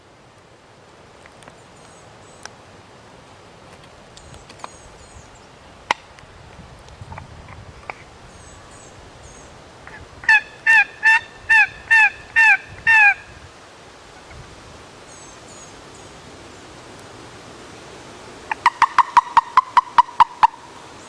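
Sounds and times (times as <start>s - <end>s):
turkey yelping: 9.9s - 13.3s, 18.5s - 20.8s.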